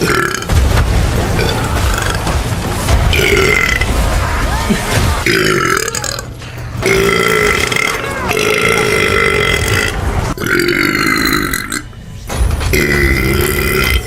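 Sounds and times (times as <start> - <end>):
woman burping: 5.2 - 11.8.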